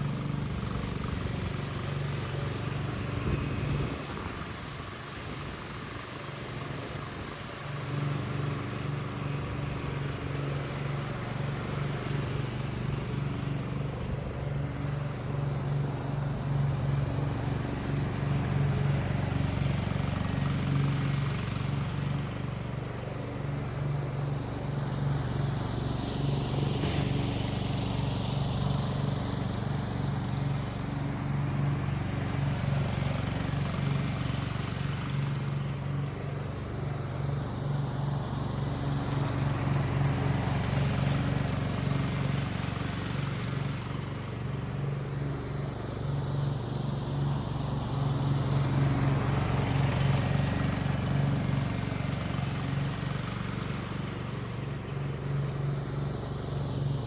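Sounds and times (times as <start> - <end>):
riding mower engine running: 0.0 - 57.0.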